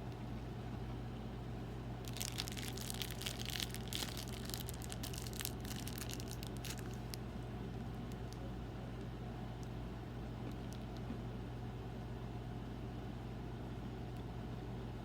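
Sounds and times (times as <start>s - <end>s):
steady low hum: 0.0s - 15.0s
crunching eating sounds: 2.0s - 8.5s, 10.4s - 11.2s.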